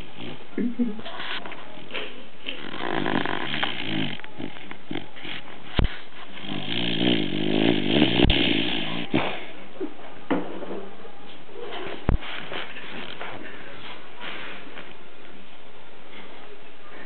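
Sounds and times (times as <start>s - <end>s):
dog snoring: 0.0s - 0.5s, 2.4s - 9.4s.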